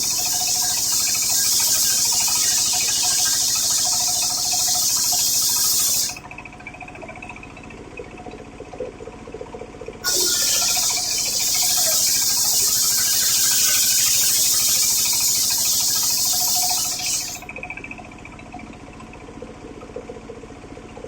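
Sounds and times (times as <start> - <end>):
circular saw machine running: 0.0 - 6.2, 10.0 - 17.9
saw blade cutting wood: 10.0 - 17.4.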